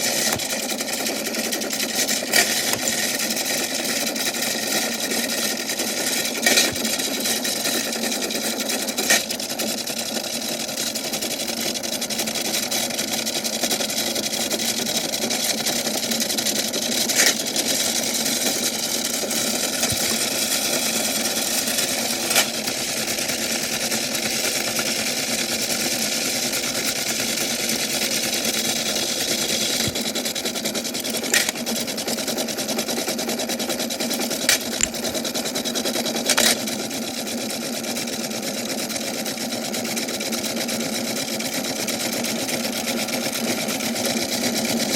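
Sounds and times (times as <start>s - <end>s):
toy washing machine motor whir: 0.0s - 44.9s
dominoes tumbling and clacking: 30.9s - 31.7s, 36.3s - 36.6s.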